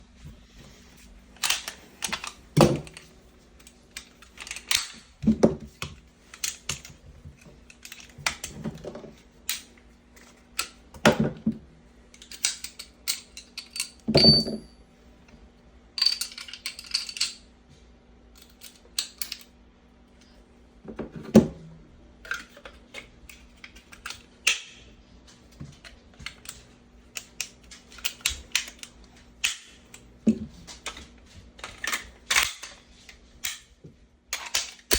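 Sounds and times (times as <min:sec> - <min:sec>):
pistol parts clicking and clacking: 0:01.4 - 0:05.2, 0:05.8 - 0:07.0, 0:07.7 - 0:08.6, 0:09.5 - 0:10.8, 0:12.2 - 0:14.6, 0:16.0 - 0:17.4, 0:18.4 - 0:19.5, 0:23.3 - 0:24.8, 0:25.8 - 0:30.1, 0:31.6 - 0:32.8, 0:33.4 - 0:33.7, 0:34.3 - 0:34.9.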